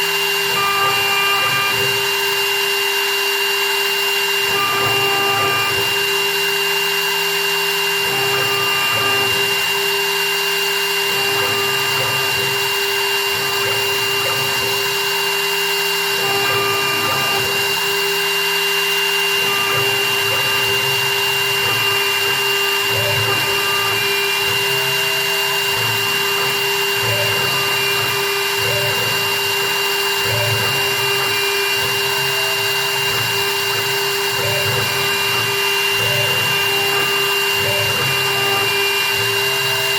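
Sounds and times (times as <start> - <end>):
low machine noise: 0.0 - 39.9
milling machine spindle whine: 0.0 - 39.9.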